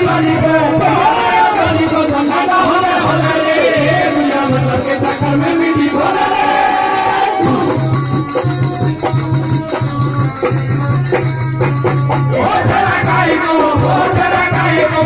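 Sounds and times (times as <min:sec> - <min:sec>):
person singing: 0:00.0 - 0:08.9
rattling hand percussion: 0:00.0 - 0:15.0.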